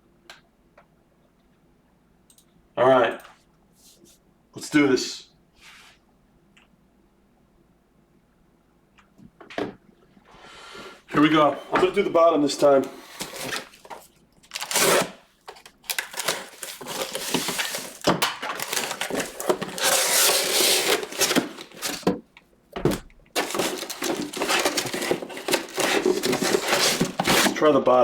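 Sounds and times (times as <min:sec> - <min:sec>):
plastic wrapping crinkling and tearing: 0:12.7 - 0:22.1, 0:23.4 - 0:27.6.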